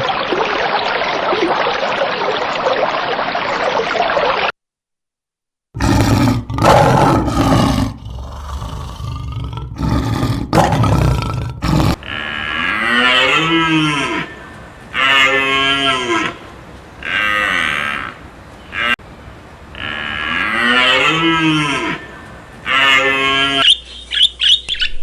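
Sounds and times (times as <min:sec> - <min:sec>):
cattle mooing: 0:11.8 - 0:23.6.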